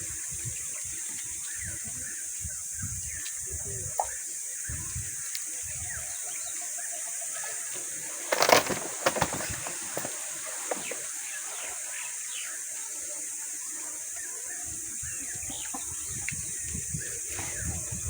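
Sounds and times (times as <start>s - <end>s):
steady high hiss: 0.0s - 18.0s
leaves and twigs rustling: 4.6s - 12.7s.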